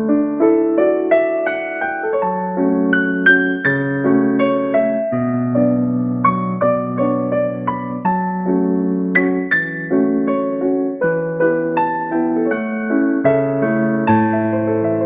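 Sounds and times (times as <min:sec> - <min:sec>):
gentle piano music: 0:00.0 - 0:15.0.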